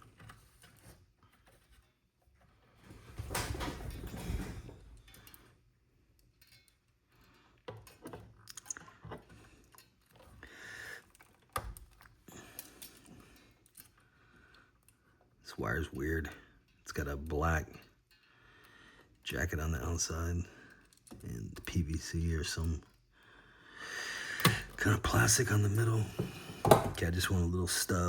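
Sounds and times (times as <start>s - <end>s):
tool clicks and taps: 24.4s - 24.8s.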